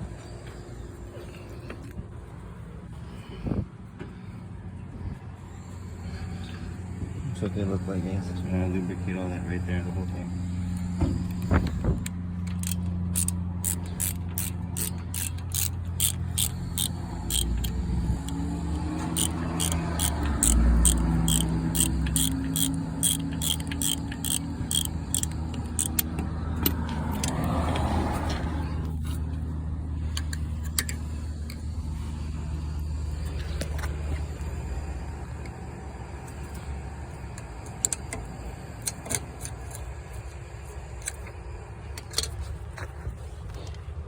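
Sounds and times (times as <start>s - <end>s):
steady low hum: 0.0s - 44.0s
ratchet wrench clicking: 10.8s - 27.9s, 37.4s - 39.9s.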